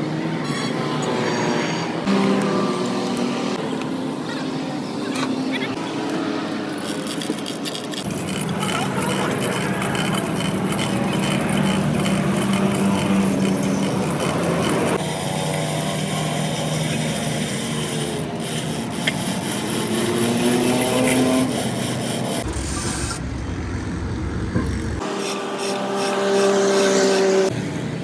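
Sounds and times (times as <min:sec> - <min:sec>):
tool rasping and grinding: 0:06.6 - 0:23.2, 0:25.0 - 0:27.5.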